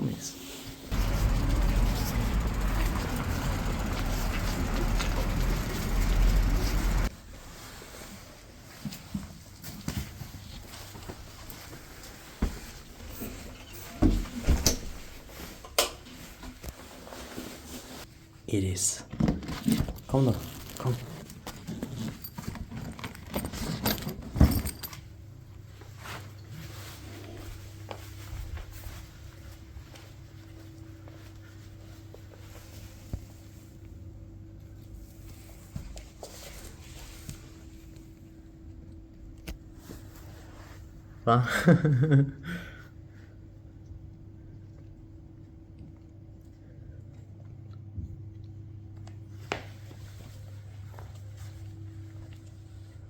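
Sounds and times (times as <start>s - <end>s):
car engine and road rumble: 0.9s - 7.1s
jangling handling noises: 0.9s - 7.1s, 19.6s - 25.2s
steady low hum: 0.9s - 7.1s.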